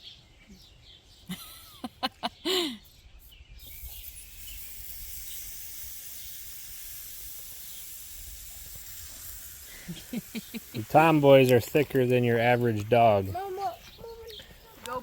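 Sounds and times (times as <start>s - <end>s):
campfire hissing: 3.6s - 15.0s.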